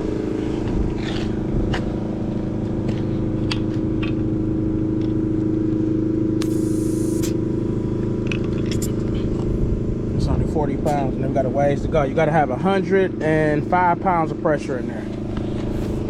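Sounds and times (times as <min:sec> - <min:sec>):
steady motor hum: 0:00.0 - 0:16.0
short hiss of air: 0:06.4 - 0:07.4.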